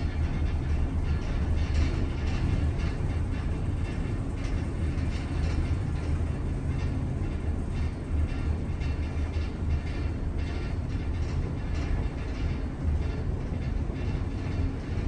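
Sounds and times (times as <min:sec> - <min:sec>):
elevator car rattling: 0:00.0 - 0:15.0
elevator car rumbling: 0:00.0 - 0:15.0.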